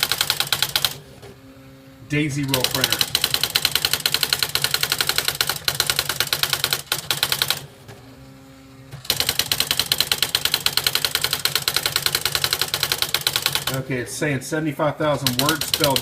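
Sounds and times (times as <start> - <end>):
typewriter type strikes: 0.0 - 1.0, 2.4 - 7.6, 9.0 - 13.8, 15.2 - 16.0
typewriter motor hum: 0.0 - 1.4, 2.0 - 14.0, 15.1 - 16.0.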